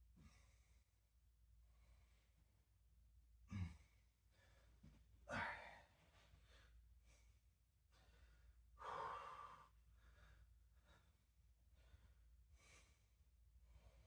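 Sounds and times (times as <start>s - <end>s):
person breathing heavily: 7.9s - 13.1s.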